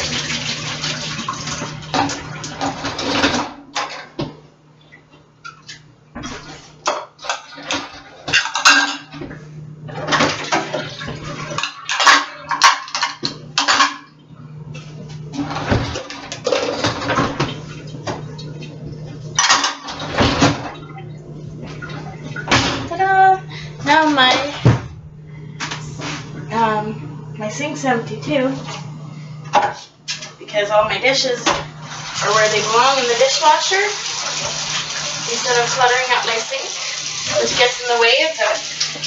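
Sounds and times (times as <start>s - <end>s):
dishes and cutlery clattering: 6.9s - 9.2s, 9.9s - 14.1s, 19.4s - 20.6s
steady low hum: 7.8s - 33.2s.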